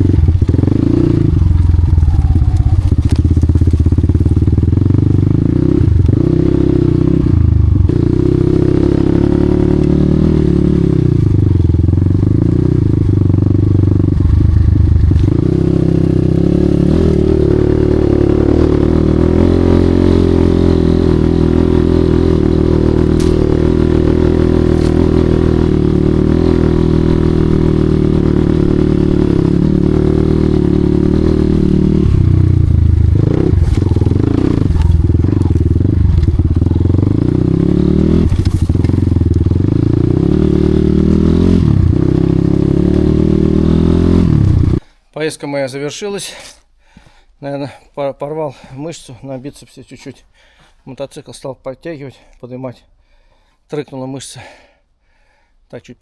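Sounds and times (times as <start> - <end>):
clatter: 0.0 - 6.3, 23.0 - 26.0, 31.3 - 40.2
motorcycle engine revving: 0.0 - 44.9.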